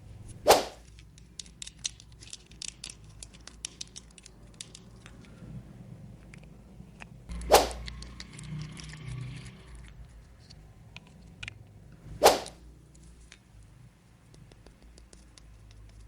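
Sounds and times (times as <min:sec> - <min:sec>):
sharp swishing snaps: 0:00.3 - 0:00.8, 0:07.3 - 0:07.8, 0:12.1 - 0:12.6
plastic toy parts clicking: 0:00.8 - 0:05.5, 0:06.2 - 0:11.7, 0:13.0 - 0:16.0.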